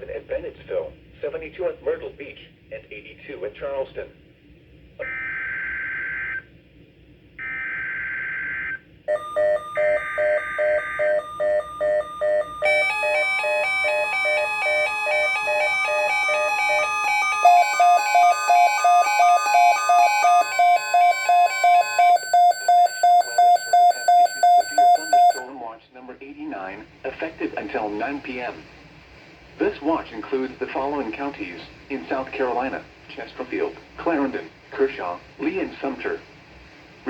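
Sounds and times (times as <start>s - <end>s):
steady warning alarm tone: 7.4s - 25.5s
weather radio alert beeps: 9.1s - 25.5s
digital header data bursts: 9.2s - 23.6s.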